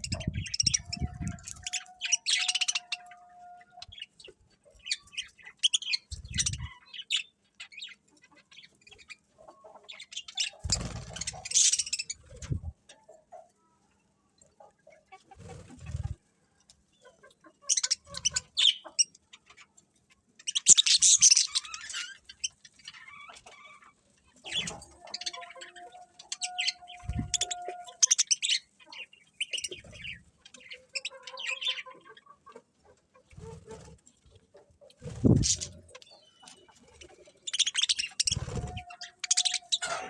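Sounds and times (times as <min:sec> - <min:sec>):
birds chirping and calling: 0:00.0 - 0:40.0.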